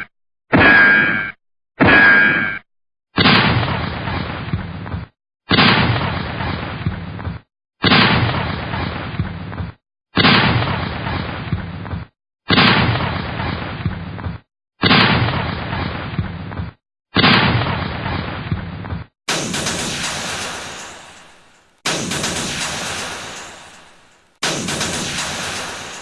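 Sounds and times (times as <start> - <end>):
gunshot blast: 19.3 - 26.0.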